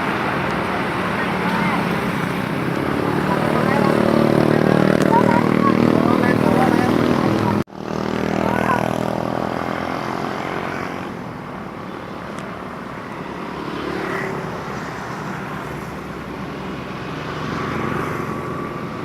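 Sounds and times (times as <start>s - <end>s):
bus engine drone: 0.0s - 13.6s.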